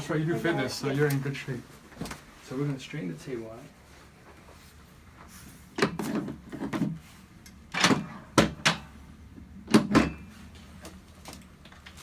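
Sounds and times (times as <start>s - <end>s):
treatment table clunks and knocks: 7.7s - 8.9s, 9.6s - 10.3s.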